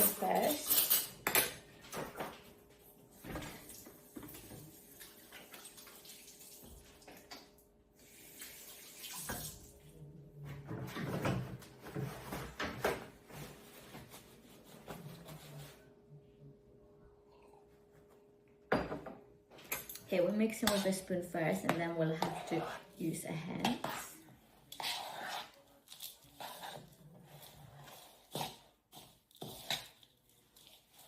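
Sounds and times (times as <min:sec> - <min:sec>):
spoon scraping in a bowl: 0:00.0 - 0:01.5, 0:19.9 - 0:21.1, 0:22.0 - 0:31.0.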